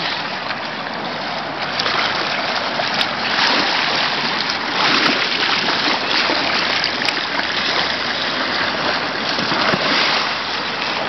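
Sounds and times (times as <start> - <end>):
water flowing: 0.0 - 11.0.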